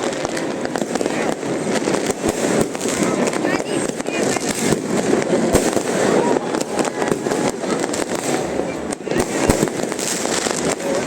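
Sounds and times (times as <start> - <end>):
fireworks crackling and banging: 0.0 - 11.0.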